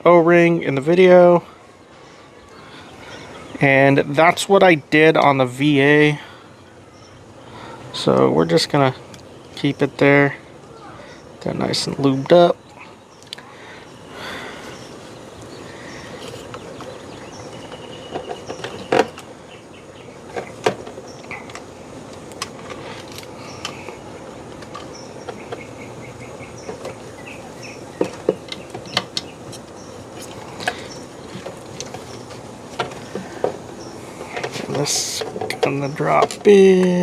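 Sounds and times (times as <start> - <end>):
steady background hiss: 0.0 - 37.0
plastic parts clicking and knocking: 16.2 - 19.3, 20.2 - 25.8, 26.5 - 27.1, 27.8 - 37.0.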